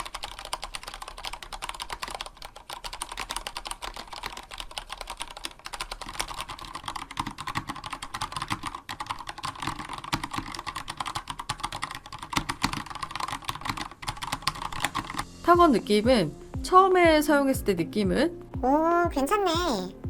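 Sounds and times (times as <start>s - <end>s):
mechanical keyboard typing: 0.0s - 15.2s.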